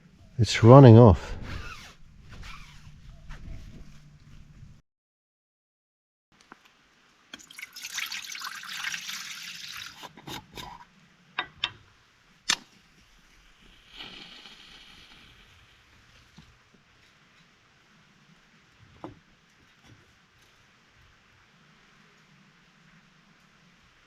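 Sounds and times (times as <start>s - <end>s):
sharp drips: 7.3s - 10.0s
water trickling and splashing: 7.3s - 10.7s.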